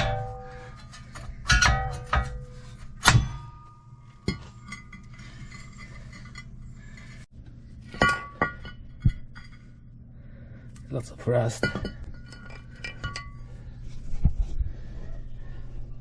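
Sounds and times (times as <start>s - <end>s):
sharp metal knocks ringing: 0.0s - 4.5s
metal tools clanking: 0.0s - 7.3s, 11.2s - 13.6s.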